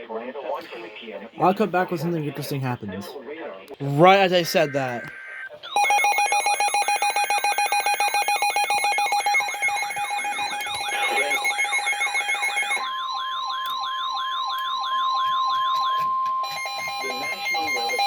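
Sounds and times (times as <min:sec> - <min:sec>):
warbling alarm: 0:04.0 - 0:18.0.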